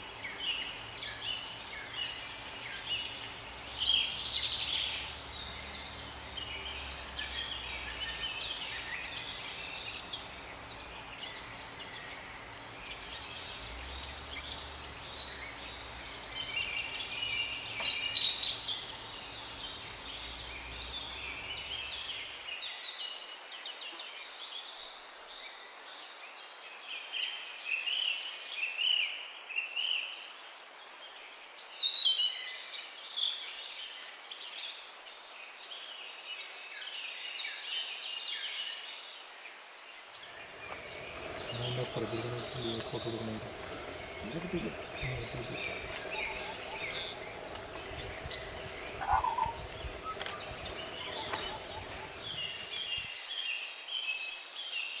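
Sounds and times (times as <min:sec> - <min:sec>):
songbirds chirping: 0:00.0 - 0:55.0
low background rumble: 0:40.4 - 0:53.1.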